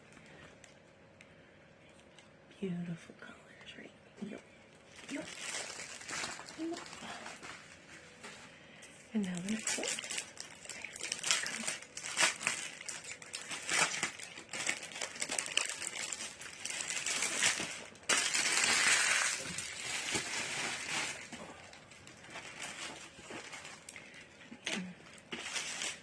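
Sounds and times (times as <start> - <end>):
packaging crinkling and tearing: 4.8 - 7.8, 9.2 - 26.0.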